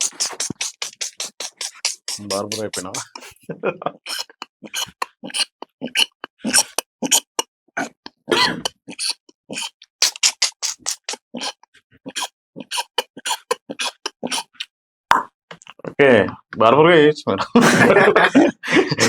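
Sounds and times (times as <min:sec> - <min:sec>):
mouth-made scissor snips: 0:00.0 - 0:03.4, 0:04.1 - 0:07.4, 0:08.4 - 0:14.7.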